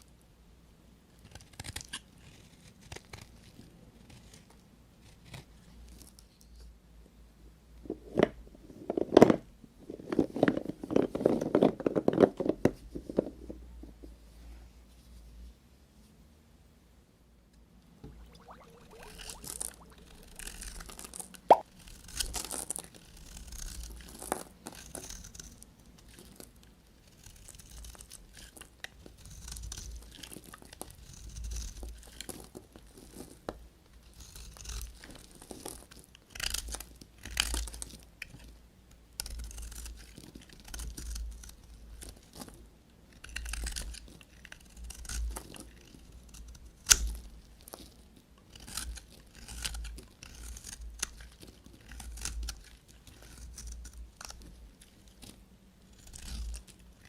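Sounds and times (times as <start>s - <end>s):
knife cutting through soap: 1.2s - 6.1s, 19.1s - 33.4s, 34.1s - 38.5s, 39.2s - 42.5s, 43.1s - 55.3s, 55.9s - 57.0s.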